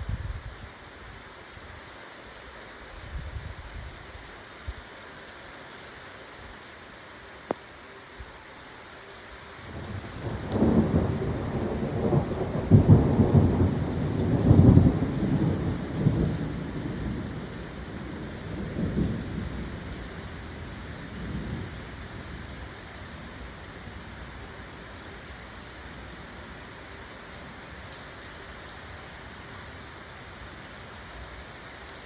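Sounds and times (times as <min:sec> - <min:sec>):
steady rain: 0:00.0 - 0:32.0
thunder rumbling: 0:09.7 - 0:24.1.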